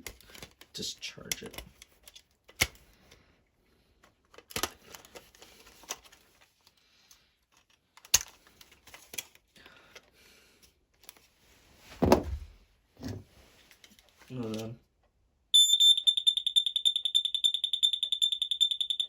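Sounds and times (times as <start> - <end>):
plastic clicks: 4.2 - 6.2, 7.1 - 10.1.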